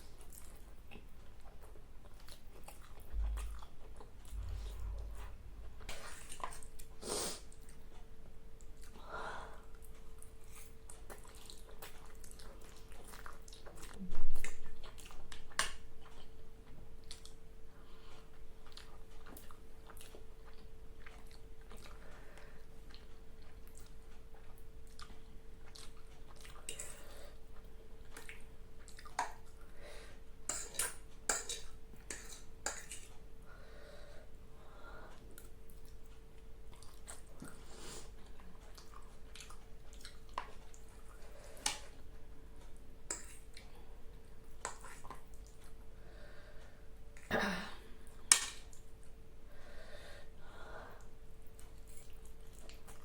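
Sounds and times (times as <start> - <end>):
faint steady hum: 0.0 - 53.0
chewing: 0.2 - 9.0, 9.7 - 17.4, 18.0 - 29.7, 35.1 - 43.8, 51.4 - 53.0.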